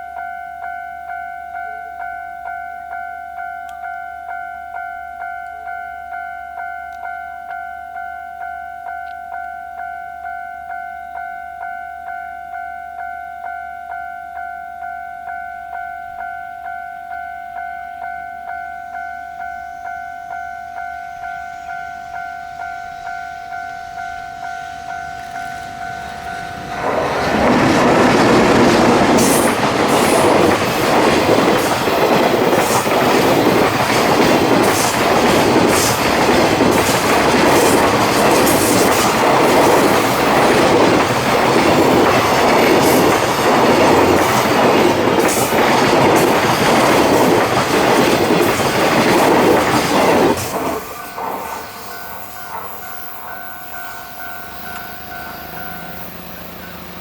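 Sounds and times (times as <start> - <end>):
freight train passing: 0.0 - 57.0
level-crossing warning bell: 0.0 - 57.0
train wheels clacking: 22.2 - 57.0.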